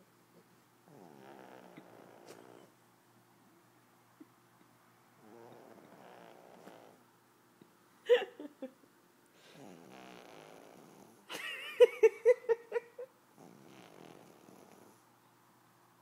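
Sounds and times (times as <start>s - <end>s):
puppy snoring and snorting: 0.8s - 2.7s, 5.2s - 7.0s, 9.5s - 11.3s, 13.4s - 15.0s.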